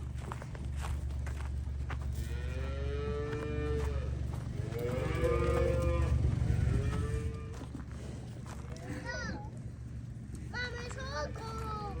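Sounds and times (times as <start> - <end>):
steady low hum: 0.0 - 12.0
cattle mooing: 2.2 - 7.7.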